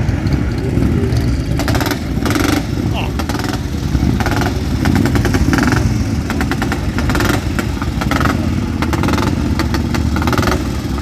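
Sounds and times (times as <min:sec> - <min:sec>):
motorcycle engines running: 0:00.0 - 0:11.0.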